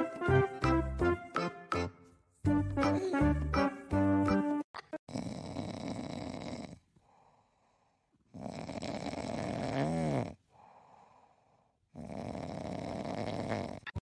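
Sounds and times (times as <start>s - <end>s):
person snoring: 5.1s - 13.9s.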